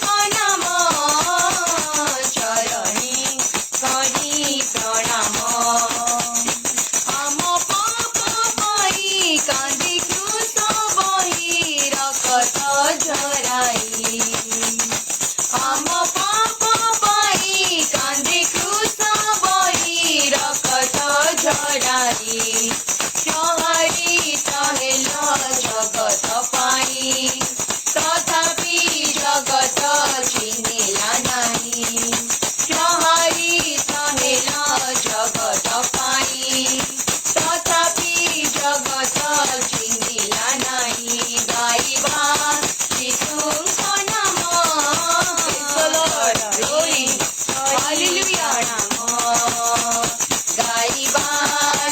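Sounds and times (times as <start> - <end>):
tambourine rhythm: 0.0 - 51.9
worship song melody: 4.3 - 7.2.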